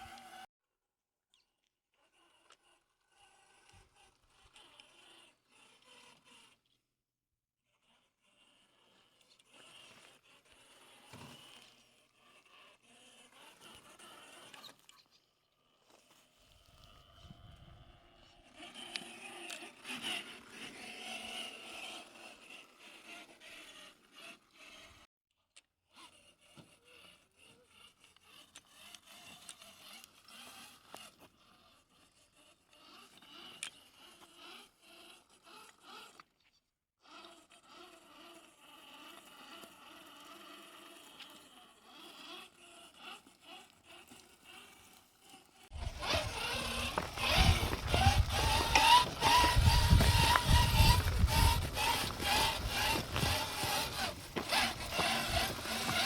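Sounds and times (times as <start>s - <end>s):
electric motor and gear whine: 0.0s - 0.5s, 15.8s - 25.0s, 37.1s - 56.0s
tyres scraping on rock: 43.0s - 56.0s.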